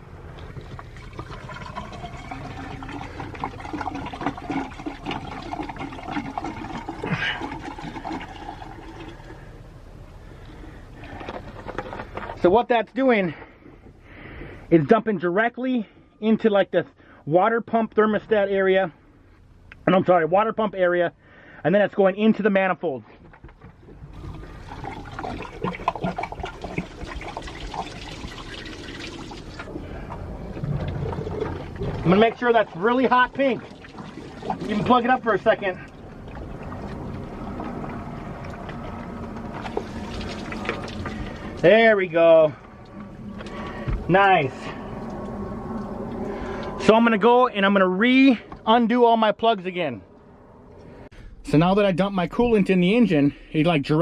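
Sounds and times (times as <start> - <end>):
liquid gurgling into a hose: 0.2 - 9.6, 23.8 - 46.8.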